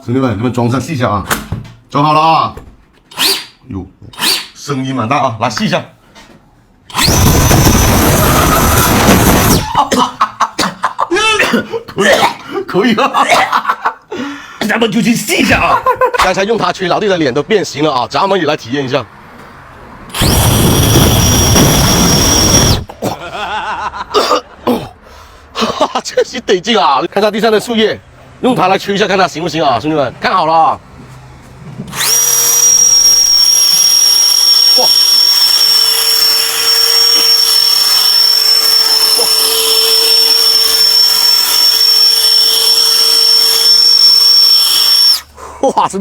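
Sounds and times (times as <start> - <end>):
electric blower whining: 6.9 - 9.8, 20.1 - 22.9, 31.9 - 45.3.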